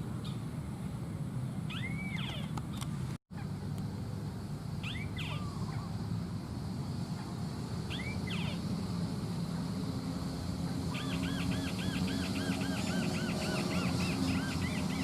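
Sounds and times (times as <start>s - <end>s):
steady low hum: 0.0s - 15.0s
bird calling with buzzy whistle: 1.7s - 2.6s, 4.8s - 6.0s, 7.8s - 8.8s, 10.8s - 15.0s.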